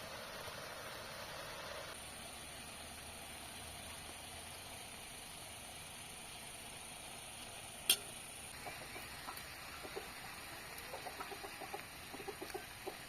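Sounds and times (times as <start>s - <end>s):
steady hiss: 0.0s - 13.0s
chicken clucking: 8.6s - 10.2s, 10.8s - 13.0s.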